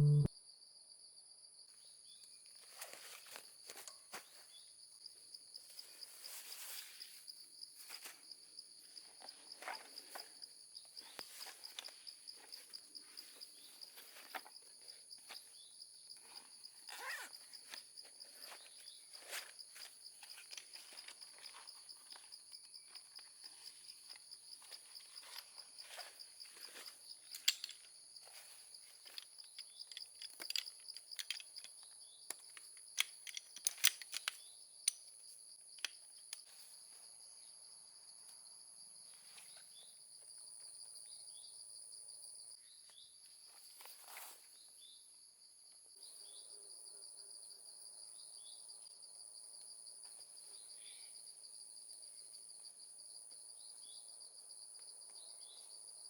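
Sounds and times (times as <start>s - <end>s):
insects trilling: 4.1s - 43.0s.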